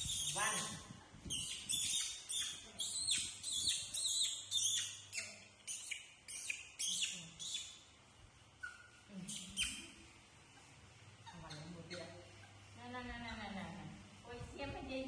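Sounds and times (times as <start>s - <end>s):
high-pitched chirping calls: 0.0s - 7.9s, 8.6s - 10.1s.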